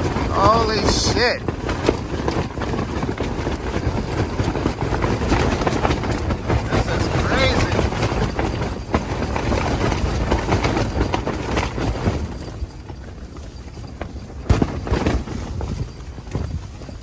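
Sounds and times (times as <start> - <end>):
wind buffeting microphone: 0.0 - 12.3
tent fabric flapping: 0.0 - 17.0.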